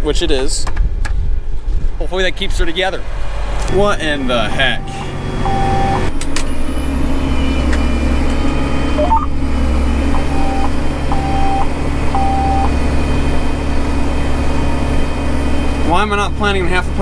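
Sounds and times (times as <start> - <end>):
tractor engine running: 3.7 - 17.0
electronic alert beeps: 3.9 - 6.1, 9.0 - 9.3, 10.1 - 12.8.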